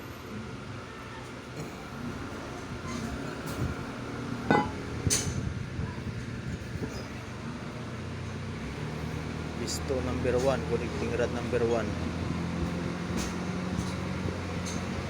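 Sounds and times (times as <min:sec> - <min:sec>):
metal engine parts clinking: 0:04.5 - 0:05.4.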